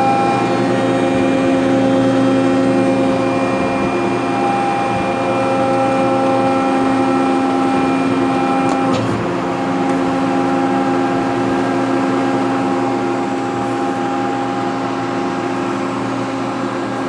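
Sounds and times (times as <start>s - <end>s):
baler motor humming and whining: 0.0s - 17.0s.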